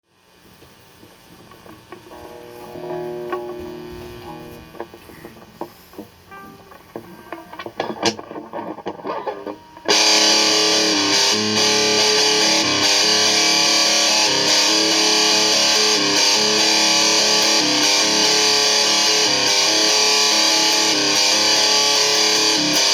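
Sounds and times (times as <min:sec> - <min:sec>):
distorted electric guitar: 0:00.4 - 0:22.9
quiet plucks and clicks: 0:01.0 - 0:09.9.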